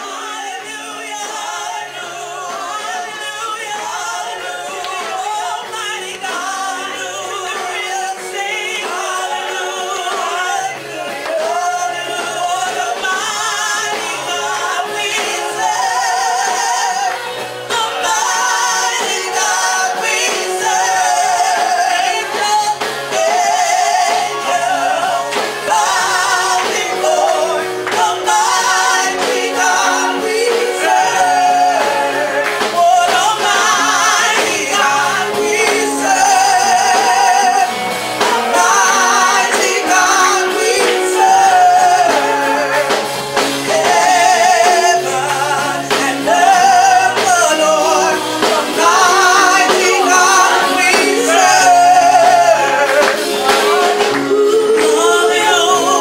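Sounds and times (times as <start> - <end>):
person singing with vibrato: 0.0 - 56.0
steady beat: 24.1 - 56.0.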